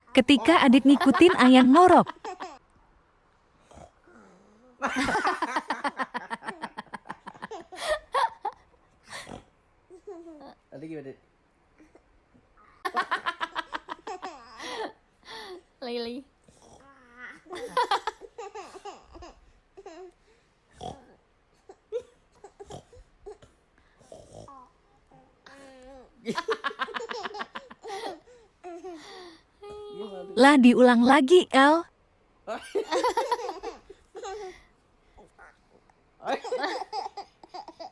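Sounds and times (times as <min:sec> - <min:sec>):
child imitating snoring: 0:03.7 - 0:04.8, 0:16.5 - 0:17.4, 0:20.8 - 0:21.2, 0:24.0 - 0:26.1.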